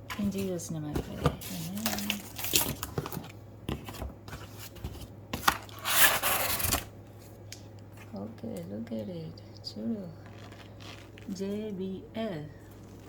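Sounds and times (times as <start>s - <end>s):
packaging scraping rustle: 0.1s - 6.9s, 10.2s - 11.4s.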